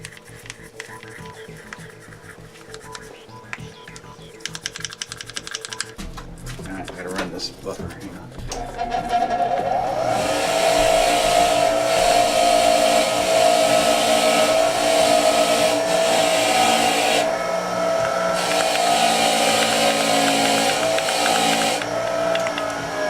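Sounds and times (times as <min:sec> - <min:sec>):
electric buffer whining: 0:08.5 - 0:23.0.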